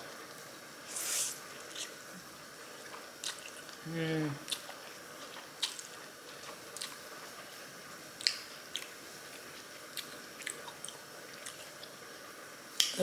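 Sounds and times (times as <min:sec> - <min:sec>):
person chewing sticky noodles: 0:02.7 - 0:03.8, 0:04.4 - 0:07.5.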